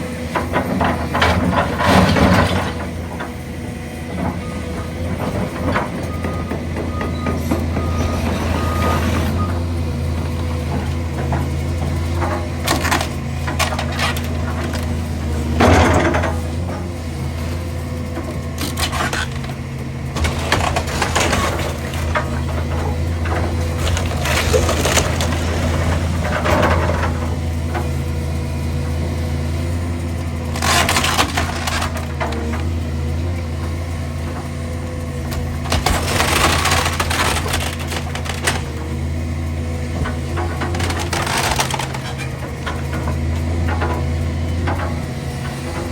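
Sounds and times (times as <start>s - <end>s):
wood cracking and splintering: 10.9s - 16.7s, 17.6s - 27.1s, 30.4s - 32.8s, 35.2s - 39.2s, 40.0s - 43.8s.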